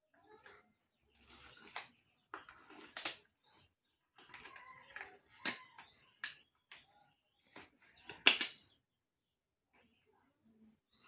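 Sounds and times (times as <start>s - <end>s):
clicks and taps of objects: 1.4s - 3.2s, 4.2s - 6.9s, 7.5s - 8.7s.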